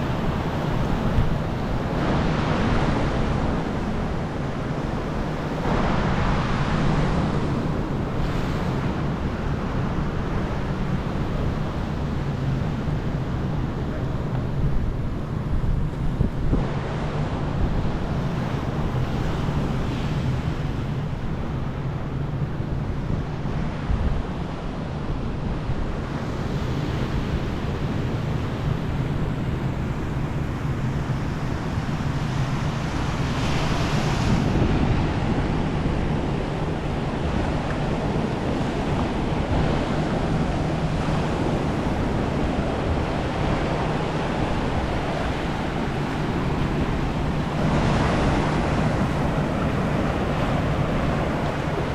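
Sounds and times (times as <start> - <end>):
wind rumbling on microphone: 0.0 - 51.9
surf washing onto beach: 26.0 - 51.9.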